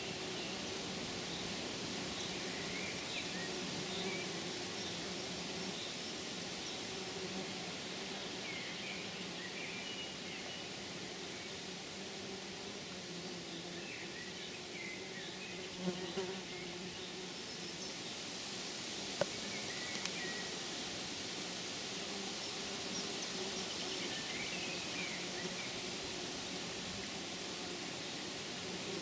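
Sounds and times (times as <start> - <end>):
faint insect buzz: 0.0 - 29.0
sharp click: 19.2 - 20.2.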